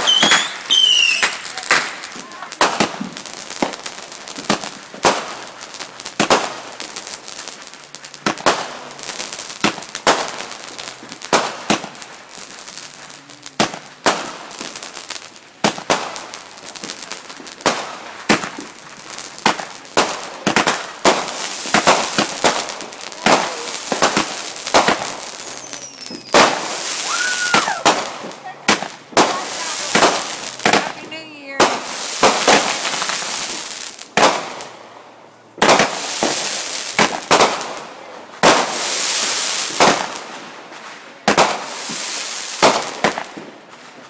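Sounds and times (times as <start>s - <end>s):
falling firework whistle: 0.0s - 2.0s, 23.2s - 28.0s
fireworks bangs and crackling: 0.0s - 44.0s.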